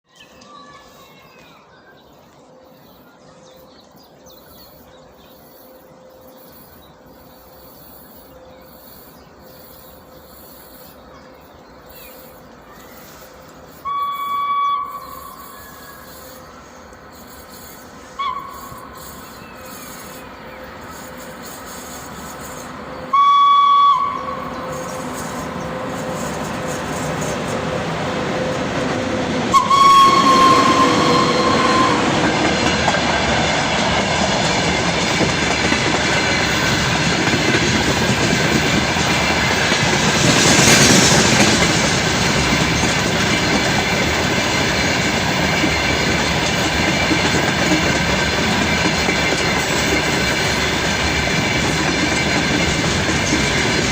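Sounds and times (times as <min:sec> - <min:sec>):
freight train rumble: 0:00.4 - 0:53.9
locomotive whistle blasts: 0:13.8 - 0:16.0, 0:18.2 - 0:18.9, 0:23.1 - 0:24.6, 0:29.5 - 0:32.4
train wheel clatter: 0:24.2 - 0:53.9.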